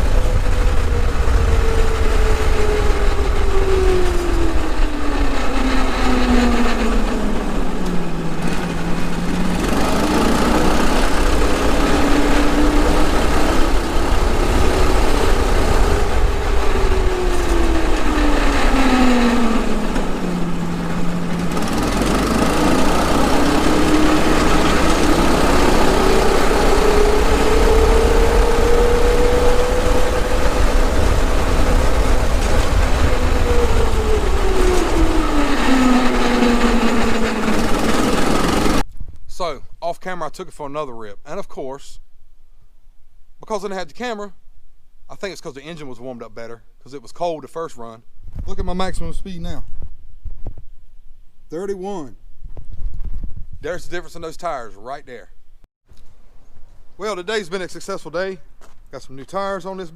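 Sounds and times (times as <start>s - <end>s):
go-kart engine revving: 0.0s - 38.9s.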